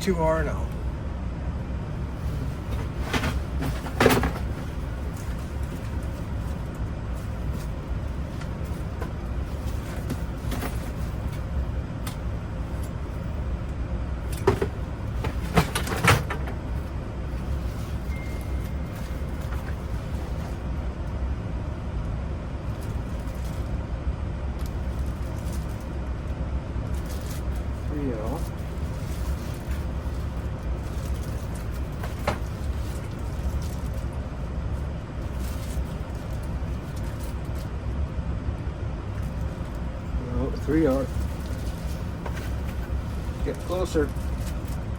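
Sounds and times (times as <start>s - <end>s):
steady low rumble: 0.0s - 44.9s.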